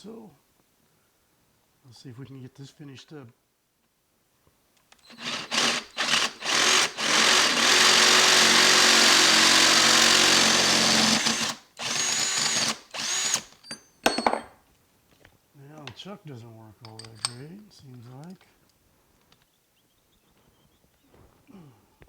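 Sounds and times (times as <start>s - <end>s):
cordless drill motor whining: 5.0s - 13.6s.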